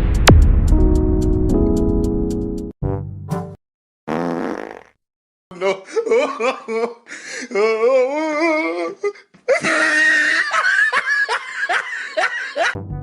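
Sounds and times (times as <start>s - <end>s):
person laughing: 5.5s - 12.8s.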